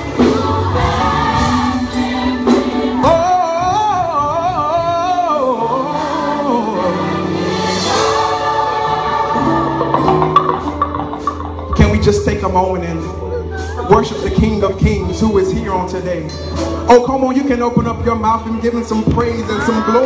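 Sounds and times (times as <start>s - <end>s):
gospel choir singing: 0.0s - 11.9s
band accompaniment: 0.0s - 20.0s.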